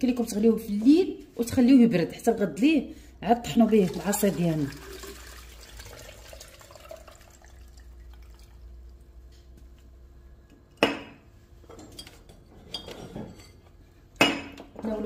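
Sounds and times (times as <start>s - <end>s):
water pouring into blender jar: 3.5s - 9.0s.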